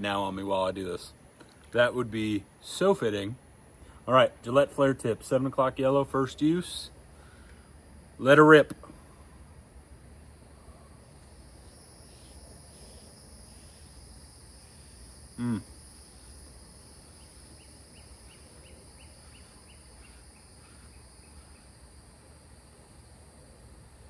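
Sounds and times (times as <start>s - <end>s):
high insect chorus: 1.8s - 24.0s
loud falling insect call: 9.9s - 24.0s.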